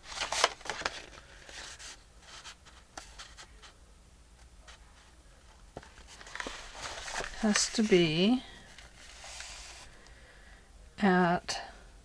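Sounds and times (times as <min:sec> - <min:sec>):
soft paper rustles: 0:00.0 - 0:03.8, 0:04.6 - 0:10.0.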